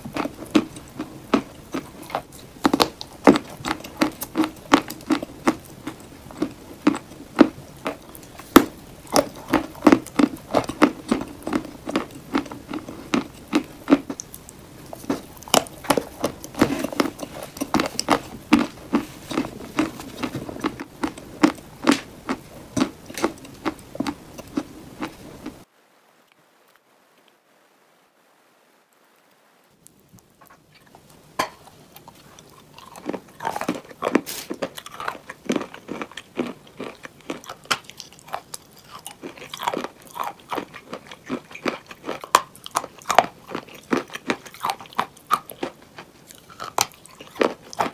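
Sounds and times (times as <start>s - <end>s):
chalk crunching in a bowl: 33.5s - 34.7s.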